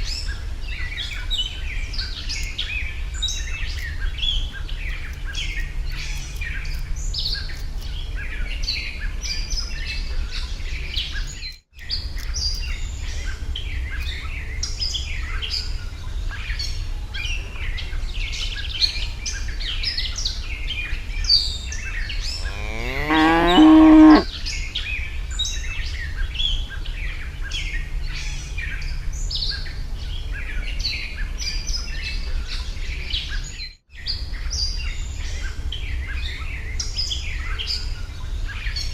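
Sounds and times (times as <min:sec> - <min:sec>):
small birds chirping: 0:00.0 - 0:33.4
cow mooing: 0:22.4 - 0:24.3.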